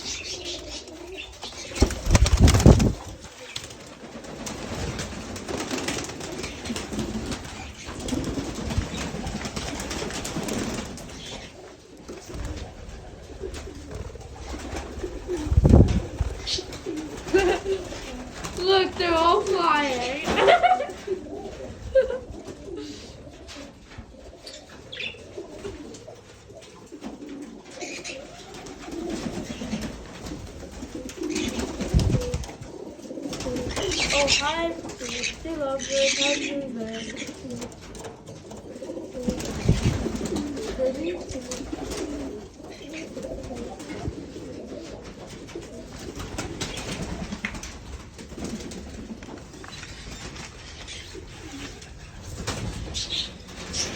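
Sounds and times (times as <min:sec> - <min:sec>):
parakeets chirping: 0:00.0 - 0:02.8, 0:16.4 - 0:16.7, 0:33.6 - 0:37.5
pigeons cooing: 0:00.0 - 0:53.9.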